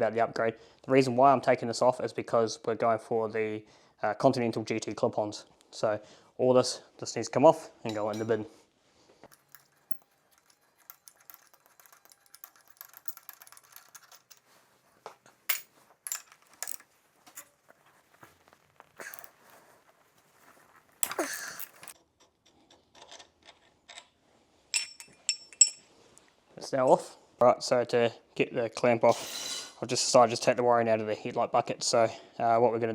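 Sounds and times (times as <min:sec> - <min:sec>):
sharp metal clinks: 0:09.3 - 0:14.4, 0:19.0 - 0:19.4, 0:21.0 - 0:22.0
scraping rustle: 0:09.3 - 0:22.0.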